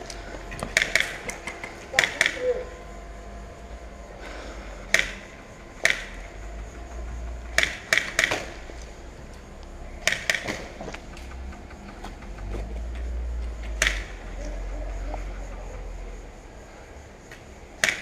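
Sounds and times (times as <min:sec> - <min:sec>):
airsoft gun shots: 0:05.8 - 0:06.2, 0:10.0 - 0:10.7, 0:17.8 - 0:18.0.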